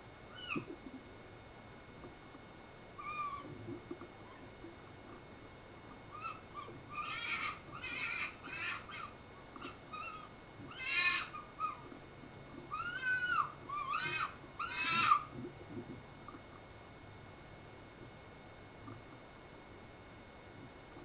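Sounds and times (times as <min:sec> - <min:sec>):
foxes calling: 0:00.3 - 0:00.8, 0:03.0 - 0:03.6, 0:06.1 - 0:11.9, 0:12.7 - 0:15.3.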